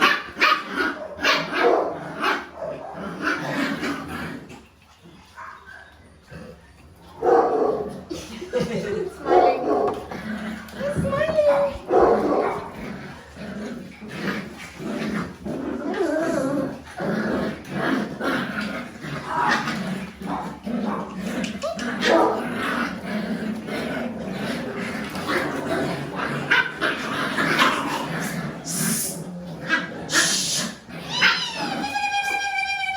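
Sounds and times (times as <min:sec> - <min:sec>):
puppies yapping and barking: 0:00.0 - 0:08.1, 0:08.8 - 0:32.9
puppies whimpering and yipping: 0:30.1 - 0:32.9.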